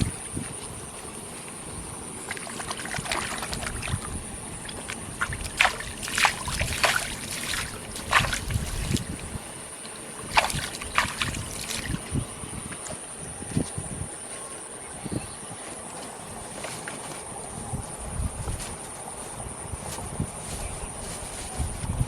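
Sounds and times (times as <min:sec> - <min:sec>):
irregular splashes: 0:00.0 - 0:13.0
water sloshing and splashing: 0:00.0 - 0:13.7.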